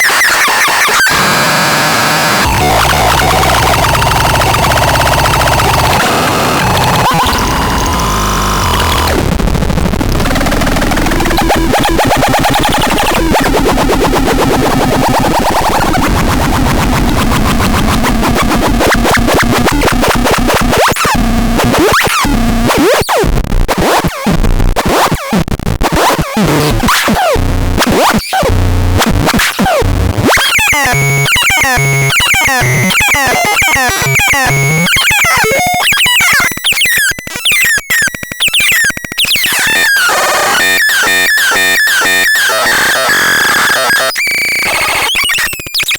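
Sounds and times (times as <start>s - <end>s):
harsh warbling electronic noise: 0.0s - 23.2s, 25.1s - 45.9s.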